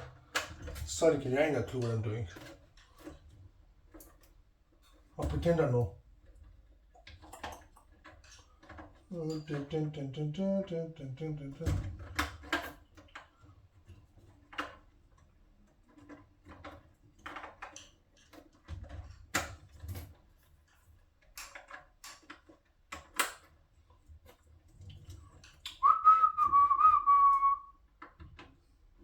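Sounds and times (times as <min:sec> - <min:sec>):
tools clicking and knocking: 0:11.4 - 0:25.8.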